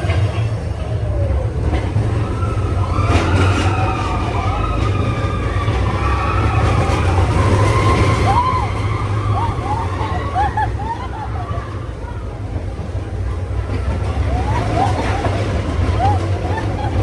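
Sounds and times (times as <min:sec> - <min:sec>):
vehicle engine rumbling: 0:00.0 - 0:17.0.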